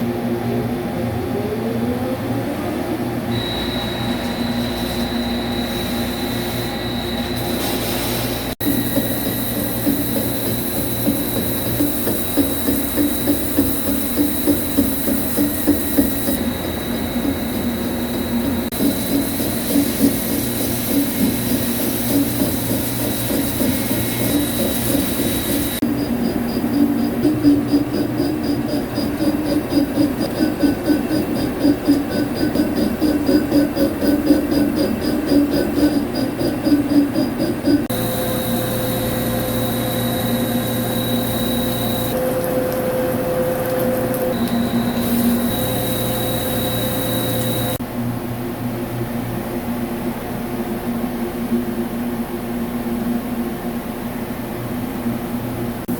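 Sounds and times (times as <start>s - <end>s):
lathe machine running: 3.2s - 47.8s.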